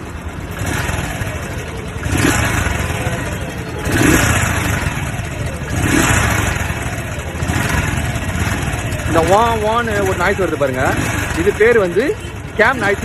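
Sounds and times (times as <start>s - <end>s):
motorcycle engine revving: 0.0s - 13.0s.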